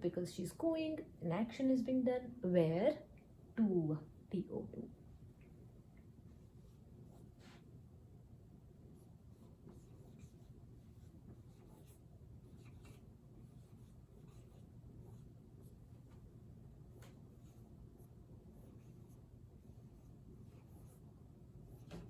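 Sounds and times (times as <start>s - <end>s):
low steady hum: 0.0s - 22.0s
pen scratching while writing: 9.3s - 16.2s, 16.9s - 22.0s.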